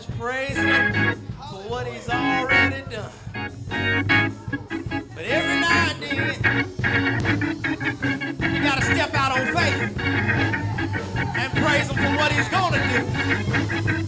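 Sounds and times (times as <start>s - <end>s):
gospel church music: 0.0s - 14.0s
organ playing: 0.0s - 14.0s.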